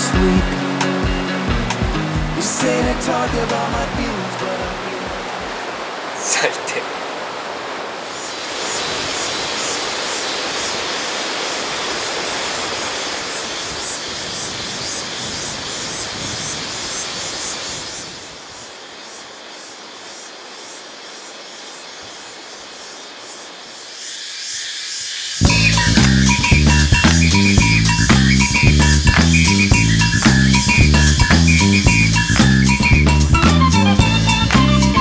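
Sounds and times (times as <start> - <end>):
shrill pulsing cicadas: 0.0 - 4.6, 5.4 - 35.0
music with bass and drums: 0.0 - 5.2, 25.4 - 35.0
rushing river water: 0.0 - 24.0, 25.4 - 35.0.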